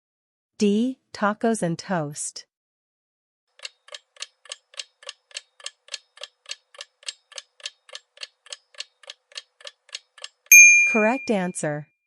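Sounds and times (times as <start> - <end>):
clock ticking: 3.6 - 11.4.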